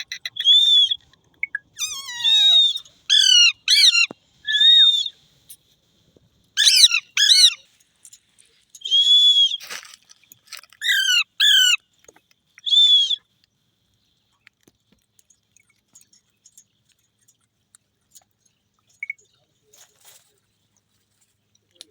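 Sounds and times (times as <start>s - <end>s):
parakeet squawking: 1.8s - 4.6s, 6.6s - 7.6s.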